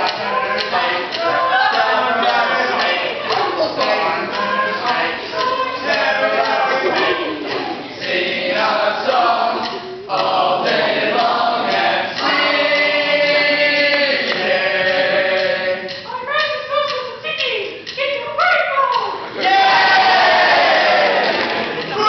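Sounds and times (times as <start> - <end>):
group of voices singing: 0.0 - 16.1, 19.2 - 22.0.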